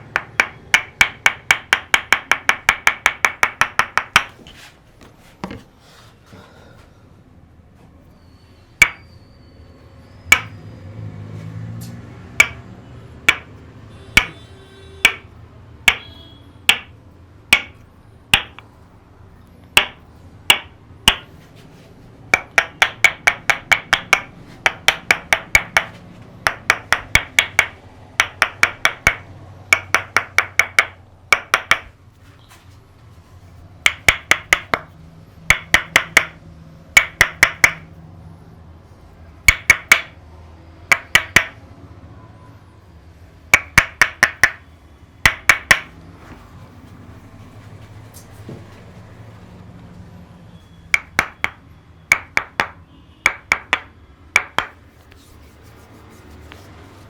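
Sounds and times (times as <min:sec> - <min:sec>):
percussive head-massage tapping: 0:00.0 - 0:04.4, 0:08.8 - 0:09.0, 0:10.3 - 0:10.6, 0:12.3 - 0:18.7, 0:19.7 - 0:21.4, 0:22.3 - 0:32.0, 0:33.8 - 0:38.0, 0:39.4 - 0:40.2, 0:40.9 - 0:41.6, 0:43.5 - 0:45.9, 0:50.9 - 0:54.8.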